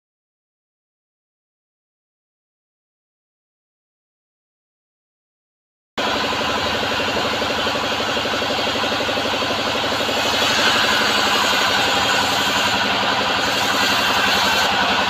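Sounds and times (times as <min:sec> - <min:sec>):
bandsaw motor pulsing: 0:06.0 - 0:15.0.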